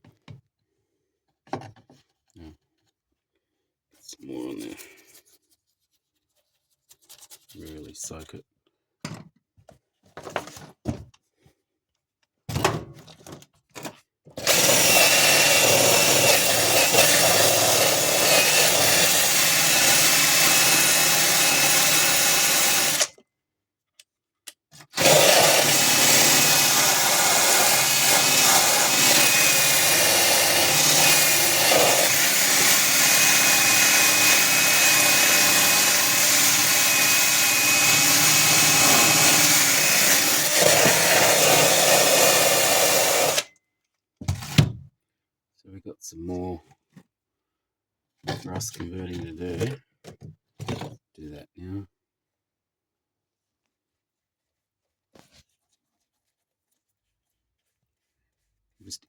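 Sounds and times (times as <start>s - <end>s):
rotary power tool on steel: 14.4s - 23.1s, 25.0s - 43.5s.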